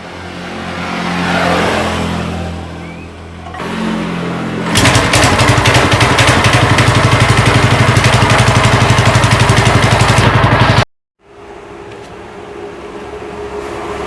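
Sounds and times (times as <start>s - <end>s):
motorcycle engine running: 3.6s - 10.9s.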